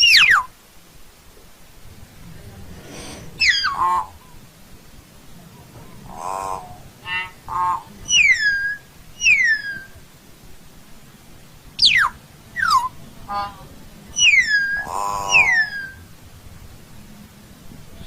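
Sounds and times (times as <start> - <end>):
myna bird calling: 0.0 - 0.5, 2.9 - 4.5, 5.4 - 10.0, 11.8 - 16.1.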